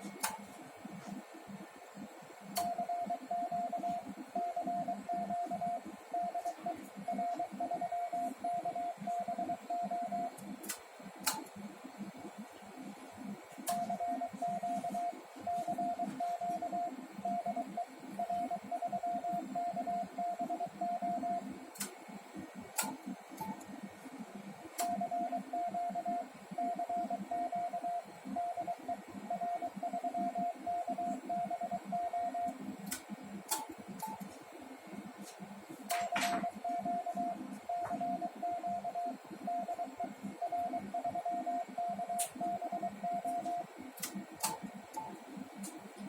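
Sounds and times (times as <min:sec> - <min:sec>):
sharp clicks: 0:10.6 - 0:11.5, 0:44.0 - 0:45.0
morse code tone: 0:13.8 - 0:21.5, 0:36.5 - 0:43.7.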